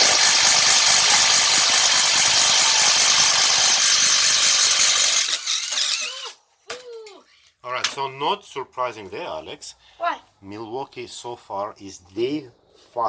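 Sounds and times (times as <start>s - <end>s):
impact driver driving a screw: 0.0s - 6.4s.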